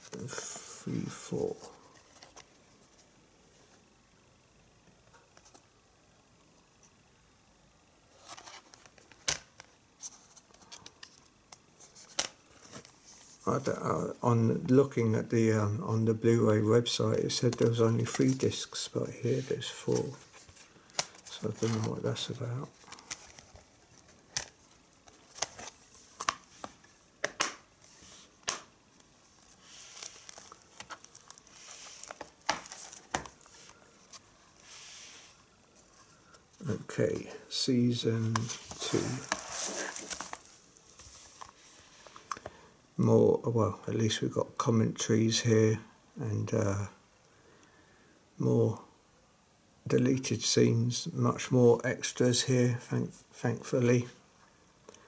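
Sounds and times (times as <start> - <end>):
plastic case rustling: 19.4 - 28.6, 29.3 - 34.7, 38.2 - 41.8
plastic cases clicking and snapping: 27.2 - 27.6.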